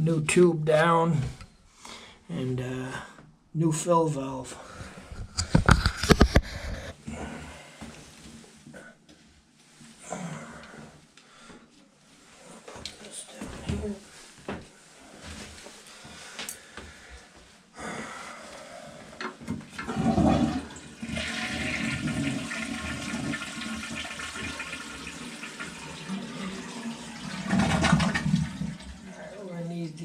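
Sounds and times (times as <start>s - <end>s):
toilet flushing with gurgling surge: 19.7s - 29.4s
water rushing through toilet bowl: 19.7s - 29.4s.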